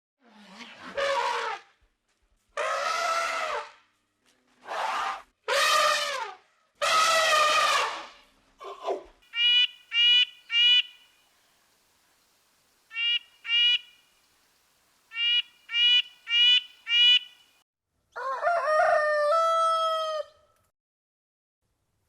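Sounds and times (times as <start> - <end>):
rooster crowing: 18.1 - 20.6.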